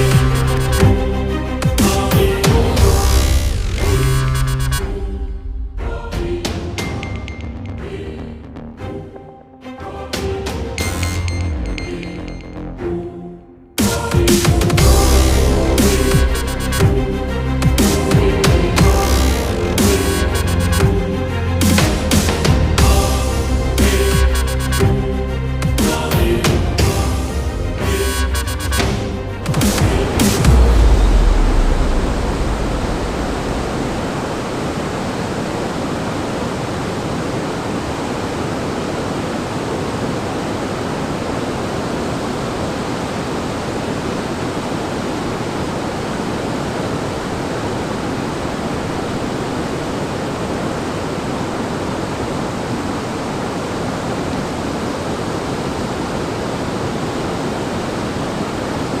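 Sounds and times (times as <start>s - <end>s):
heavy low rumble: 0.0s - 6.8s, 14.8s - 28.1s, 28.8s - 35.1s
waterfall rushing: 0.0s - 7.1s, 13.8s - 25.0s, 25.8s - 59.0s.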